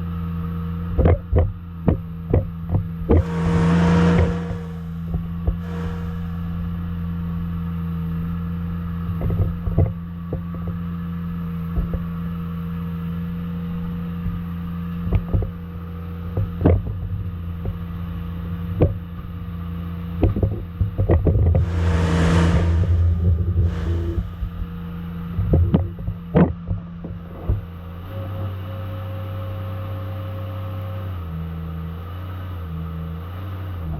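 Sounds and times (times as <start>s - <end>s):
small diesel engine running: 3.1s - 7.9s, 21.6s - 24.8s.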